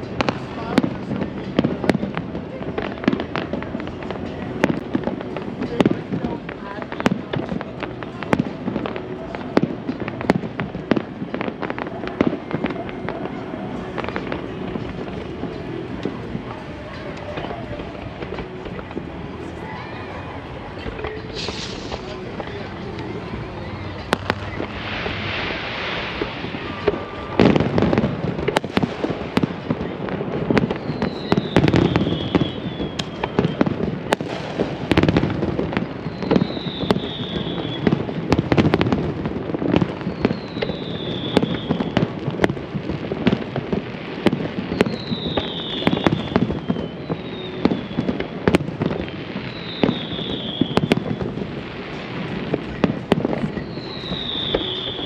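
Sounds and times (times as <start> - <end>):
fireworks bursts and booms: 0.0 - 55.0
falling firework whistle: 21.0 - 22.6, 23.2 - 29.9, 30.5 - 38.9, 39.8 - 42.2, 44.6 - 51.4, 52.8 - 55.0.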